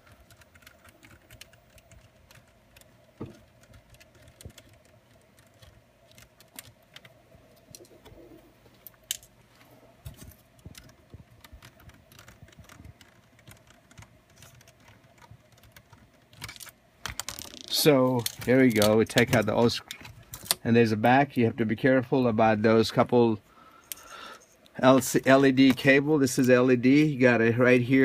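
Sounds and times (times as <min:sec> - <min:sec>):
handling plastic and metal parts: 0:00.0 - 0:21.1.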